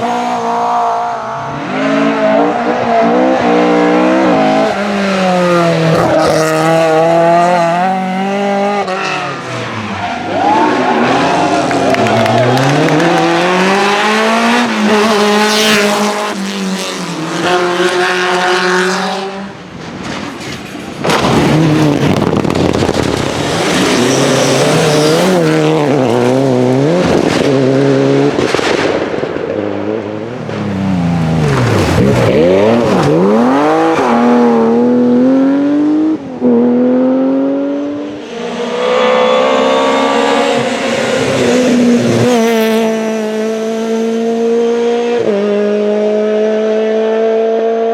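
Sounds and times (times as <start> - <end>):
rally car engines revving: 0.0 - 47.9.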